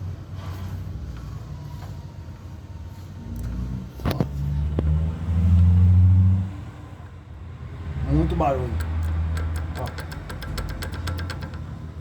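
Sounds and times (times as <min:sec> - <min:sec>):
sharp metallic clunks: 0:08.7 - 0:12.0.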